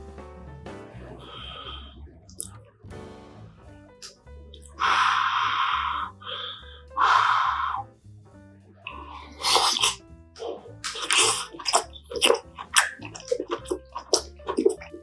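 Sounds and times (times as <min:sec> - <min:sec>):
soft background music: 0:00.0 - 0:15.0
slurping broth: 0:08.9 - 0:15.0
wet chewing smacks: 0:08.9 - 0:15.0.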